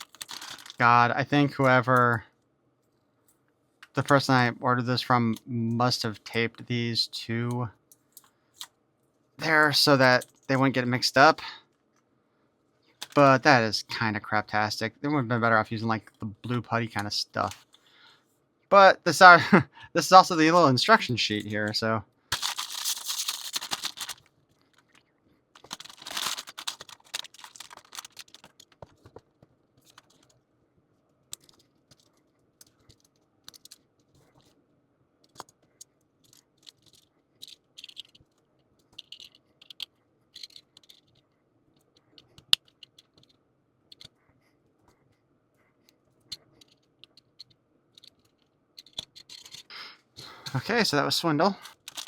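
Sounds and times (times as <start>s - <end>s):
rustling: 0.0s - 0.8s, 22.3s - 30.4s, 51.6s - 52.0s.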